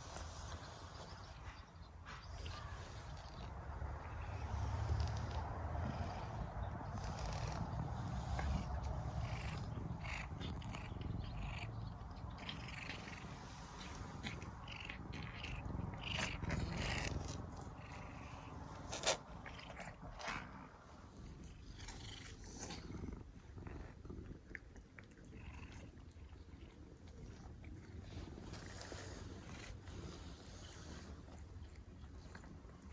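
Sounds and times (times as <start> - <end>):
low steady rumble: 0.0 - 32.9
cats licking wet smacking: 7.0 - 32.9.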